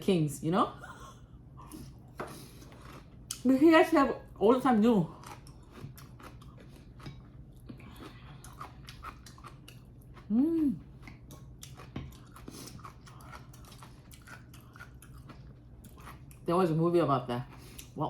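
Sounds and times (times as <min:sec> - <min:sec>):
person chewing food: 0:01.5 - 0:03.4, 0:05.1 - 0:16.4, 0:17.5 - 0:18.0
person humming: 0:10.3 - 0:10.8.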